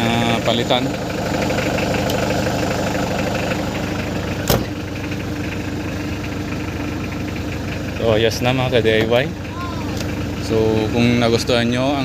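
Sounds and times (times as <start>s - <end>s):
diesel van engine idling: 0.0s - 12.0s.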